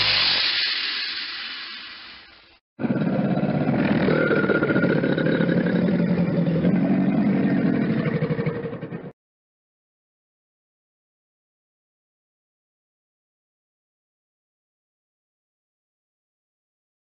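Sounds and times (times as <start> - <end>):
crocodile rumbling: 2.8 - 9.2.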